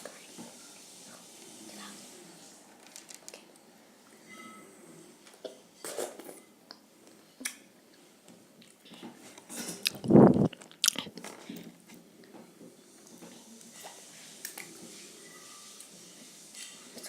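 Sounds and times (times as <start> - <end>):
chewing and biting strawberries: 9.8 - 11.2.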